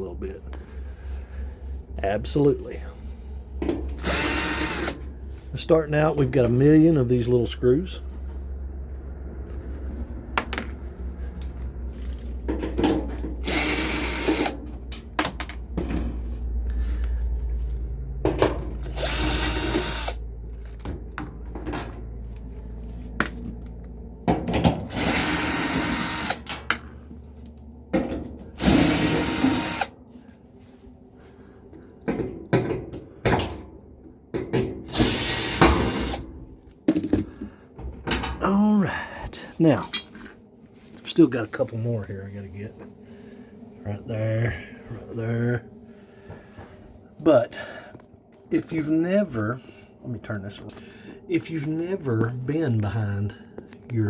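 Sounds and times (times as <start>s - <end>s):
power drill running: 4.0s - 5.0s, 13.4s - 14.6s, 18.8s - 20.2s, 24.9s - 26.6s, 28.6s - 29.9s, 34.9s - 36.2s.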